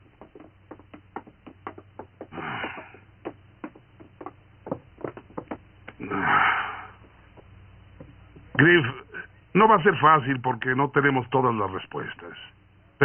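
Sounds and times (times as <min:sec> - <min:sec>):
footsteps on wooden floor: 0:00.0 - 0:06.0, 0:07.0 - 0:08.7.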